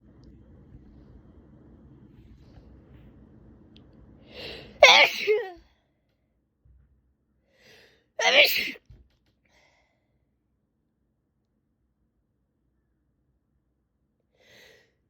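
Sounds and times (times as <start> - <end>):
woman sneezing: 4.4 - 5.6, 8.2 - 8.8.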